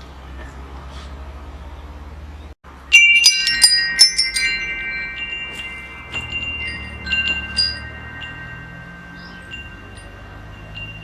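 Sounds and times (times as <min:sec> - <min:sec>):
wind chimes ringing: 0:02.7 - 0:11.0.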